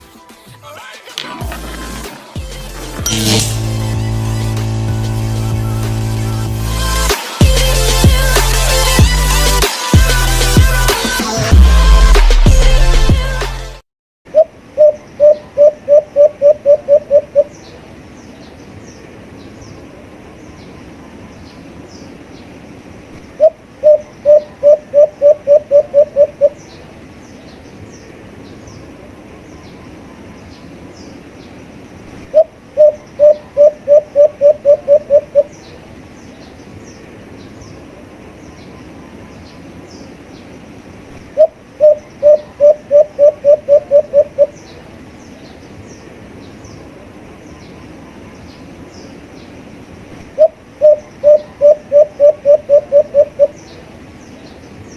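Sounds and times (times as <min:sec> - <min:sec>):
dove cooing: 0:14.3 - 0:17.5, 0:23.4 - 0:26.6, 0:32.3 - 0:35.5, 0:41.3 - 0:44.6, 0:50.3 - 0:53.6
faint high bird chirps: 0:14.3 - 0:17.8, 0:50.4 - 0:54.7.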